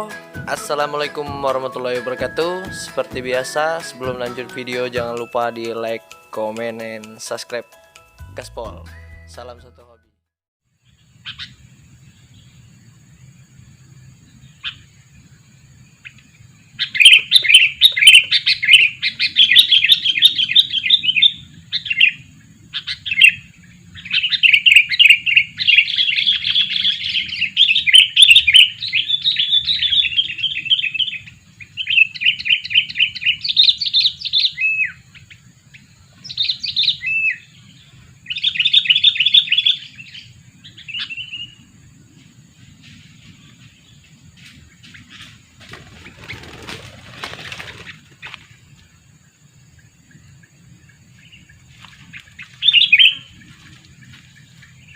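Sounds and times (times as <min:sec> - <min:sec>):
bird chattering calls: 0:16.8 - 0:37.5, 0:38.3 - 0:41.5, 0:44.8 - 0:48.5, 0:51.4 - 0:53.6.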